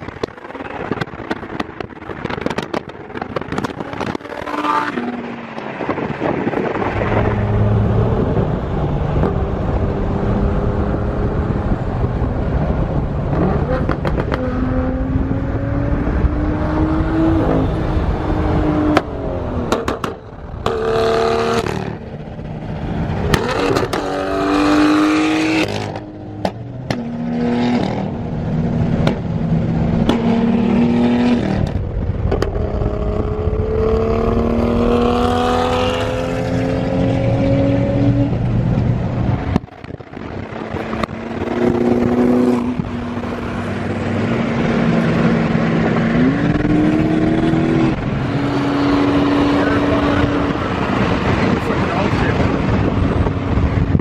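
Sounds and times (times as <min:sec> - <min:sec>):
exhaust pops and crackles: 0:00.0 - 0:04.5, 0:13.3 - 0:14.5, 0:19.7 - 0:20.8, 0:28.9 - 0:30.3, 0:31.5 - 0:32.8, 0:38.3 - 0:43.4
car engine accelerating hard: 0:00.0 - 0:54.0.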